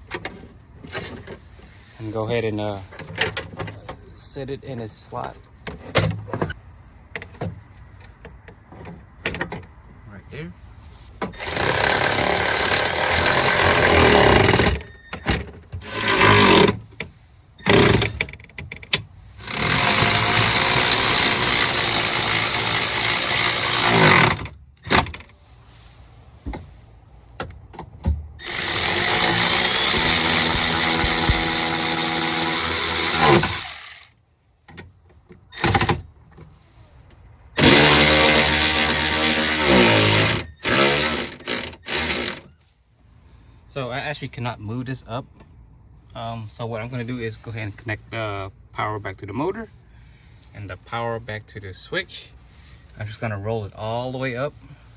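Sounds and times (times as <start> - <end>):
electric power tool running: 11.4 - 14.8, 15.8 - 16.8, 17.7 - 18.1, 19.4 - 24.4, 28.4 - 34.1, 37.6 - 42.5.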